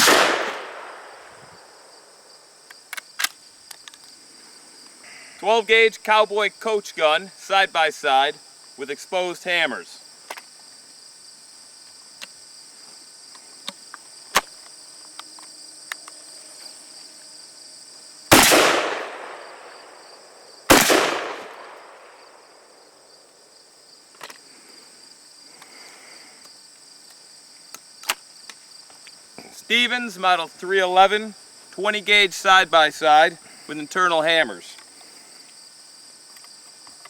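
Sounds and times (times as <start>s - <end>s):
shotgun shots echoing: 0.0s - 1.9s, 18.3s - 20.0s, 20.7s - 22.4s
crickets chirping: 0.0s - 37.0s.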